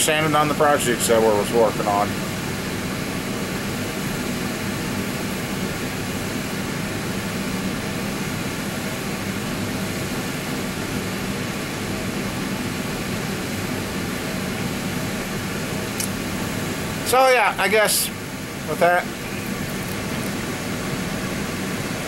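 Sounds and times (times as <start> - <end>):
steady mechanical drone: 0.0 - 22.0.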